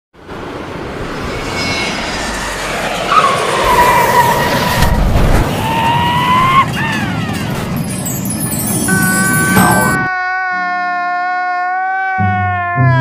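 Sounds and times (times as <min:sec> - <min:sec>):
engine and road noise: 0:00.1 - 0:09.9
tyres screeching: 0:01.0 - 0:08.3
low boom: 0:04.5 - 0:05.7.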